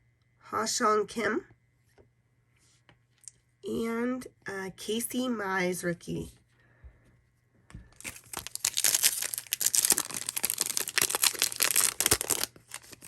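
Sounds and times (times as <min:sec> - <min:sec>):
foil wrapper crinkling and tearing: 0:08.0 - 0:13.0.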